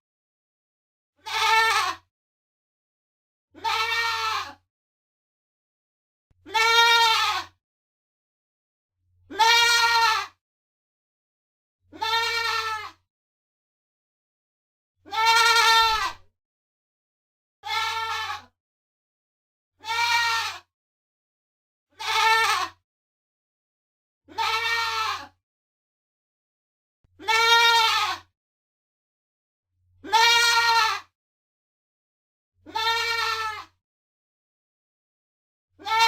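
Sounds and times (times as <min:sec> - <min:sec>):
young goat bleating: 0:01.2 - 0:02.1, 0:03.6 - 0:04.6, 0:06.5 - 0:07.5, 0:09.3 - 0:10.4, 0:11.9 - 0:13.0, 0:15.1 - 0:16.3, 0:17.6 - 0:18.5, 0:19.8 - 0:20.7, 0:22.0 - 0:22.8, 0:24.3 - 0:25.4, 0:27.2 - 0:28.3, 0:30.0 - 0:31.1, 0:32.7 - 0:33.7, 0:35.8 - 0:36.0.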